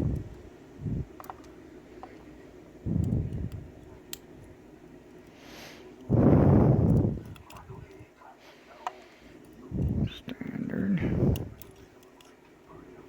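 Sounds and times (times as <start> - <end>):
small pins and tweezers clicking: 2.9 - 4.6, 6.8 - 8.1, 11.3 - 12.4.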